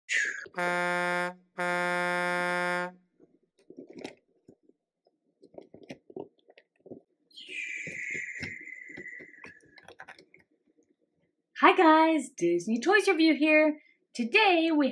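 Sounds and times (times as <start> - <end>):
buzzy horn blasts: 0.5 - 3.1
faint clicks and taps: 3.2 - 7.1.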